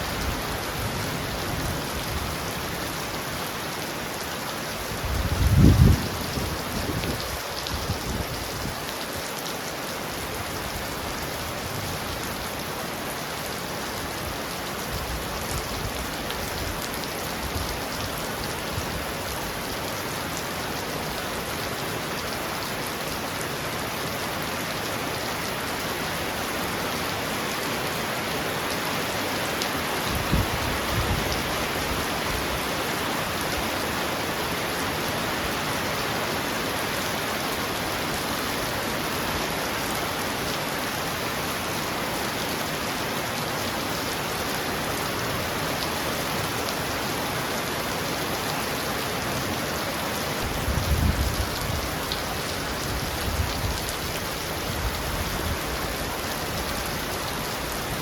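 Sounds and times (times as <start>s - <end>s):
heavy rain on a roof: 0.0s - 58.0s.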